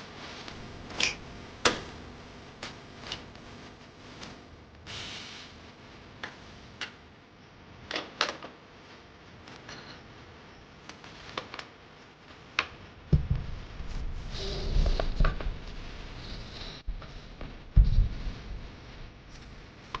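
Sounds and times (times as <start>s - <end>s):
dull thump: 13.1s - 14.2s, 17.7s - 18.7s
low handling rumble: 13.1s - 19.7s.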